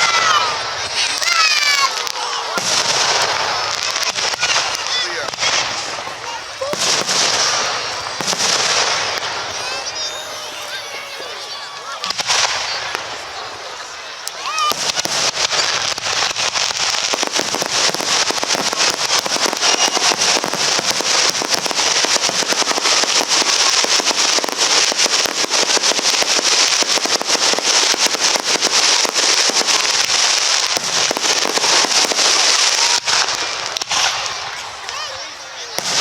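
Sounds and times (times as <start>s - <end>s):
fireworks crackling: 0.0s - 36.0s.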